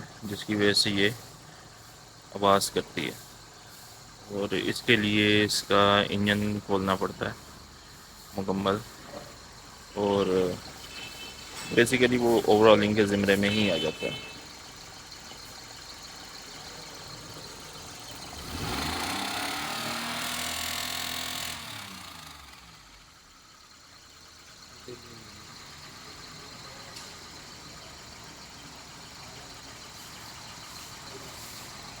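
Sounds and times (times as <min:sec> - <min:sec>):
car engine knocking and revving: 0:14.4 - 0:32.0.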